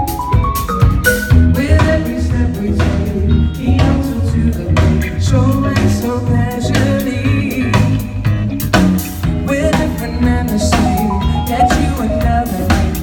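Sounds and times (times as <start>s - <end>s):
drum kit hits: 0.0s - 2.1s, 10.6s - 13.0s
bass line: 0.0s - 13.0s
live band playing: 0.0s - 13.0s
person singing: 1.4s - 8.3s, 9.4s - 13.0s.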